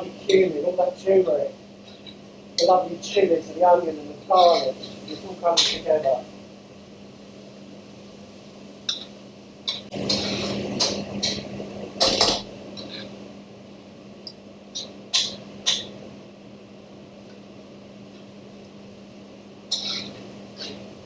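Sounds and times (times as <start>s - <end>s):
steady low hum: 0.0s - 21.0s
spoon scraping a metal pan: 4.3s - 5.8s, 9.7s - 10.6s, 19.7s - 20.8s.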